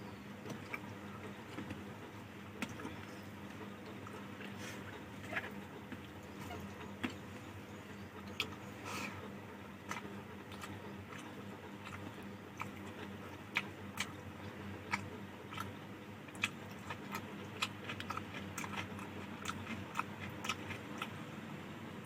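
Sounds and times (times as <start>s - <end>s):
steady low hum: 0.0s - 22.0s
person chewing with mouth clicks: 8.2s - 21.2s.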